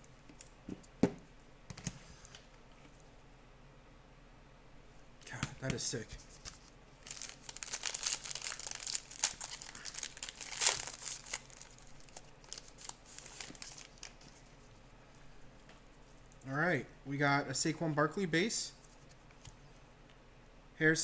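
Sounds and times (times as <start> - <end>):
wrapper crinkling and tearing: 6.5 - 14.4.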